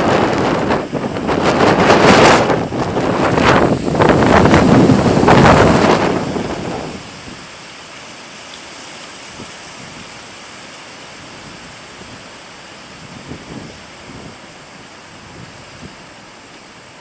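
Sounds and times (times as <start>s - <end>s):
wind buffeting microphone: 0.0s - 7.6s, 13.0s - 14.4s
steady hiss of wind: 0.0s - 17.0s.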